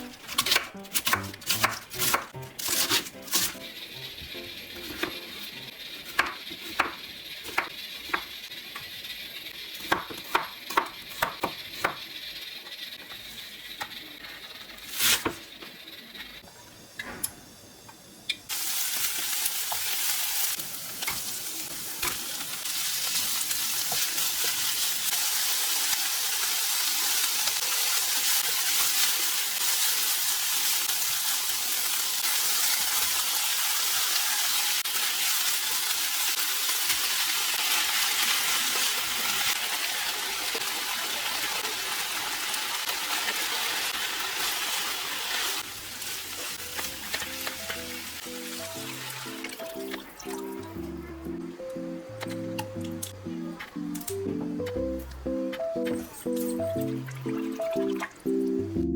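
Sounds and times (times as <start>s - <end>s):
food sizzling in hot pan: 0.0s - 50.6s
kitchen utensils clicking: 46.3s - 48.1s, 55.0s - 58.2s.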